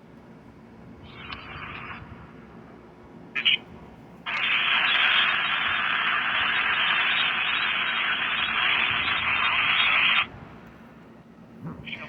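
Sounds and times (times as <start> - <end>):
radio static hiss: 4.3 - 10.3, 11.6 - 12.0.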